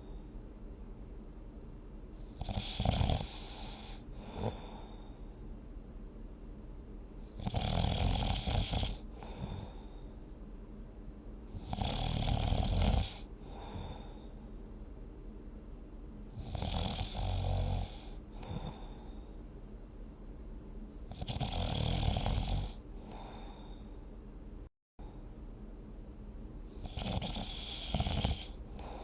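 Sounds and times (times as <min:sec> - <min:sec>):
quiet breath: 0:00.0 - 0:00.5, 0:02.1 - 0:05.6, 0:08.4 - 0:10.6, 0:13.0 - 0:14.9, 0:17.2 - 0:19.6, 0:22.6 - 0:24.2, 0:25.0 - 0:25.4, 0:26.6 - 0:29.0
person snoring: 0:02.3 - 0:05.2, 0:07.4 - 0:10.0, 0:11.5 - 0:14.4, 0:16.4 - 0:19.3, 0:21.1 - 0:23.9, 0:26.8 - 0:29.0.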